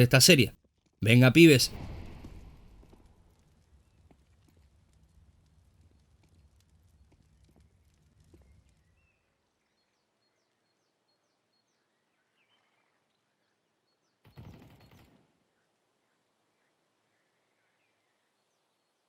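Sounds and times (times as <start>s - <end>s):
faint outdoor ambience: 0.0s - 1.8s.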